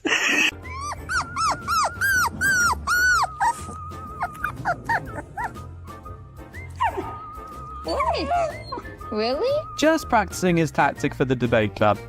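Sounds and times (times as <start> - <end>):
dog yipping: 0.6 - 5.7, 6.6 - 9.6
dog yowling: 0.6 - 5.7, 6.6 - 9.7.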